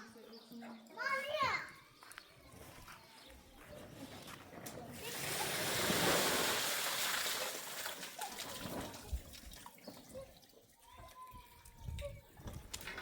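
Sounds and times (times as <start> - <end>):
water dripping and trickling: 5.0 - 12.9.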